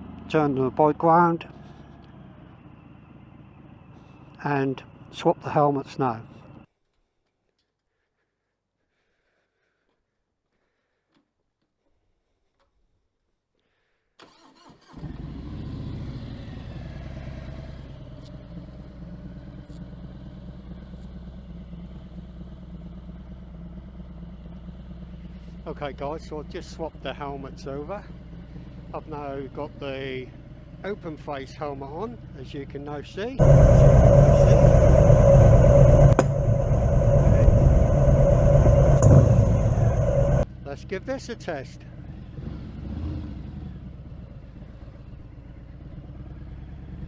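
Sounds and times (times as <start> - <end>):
motorcycle engine starting and idling: 14.2 - 31.1
wind buffeting microphone: 33.4 - 40.4.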